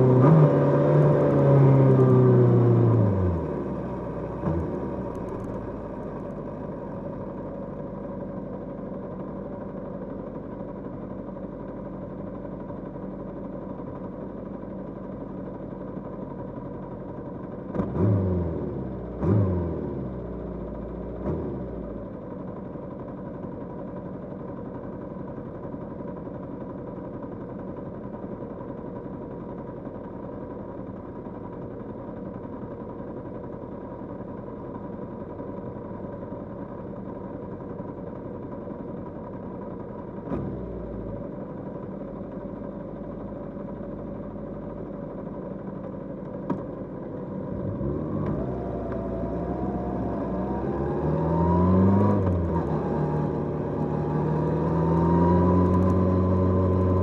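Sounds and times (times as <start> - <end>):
motorcycle engine idling: 3.2 - 17.8, 20.1 - 47.5
motorcycle engine revving: 47.5 - 57.0.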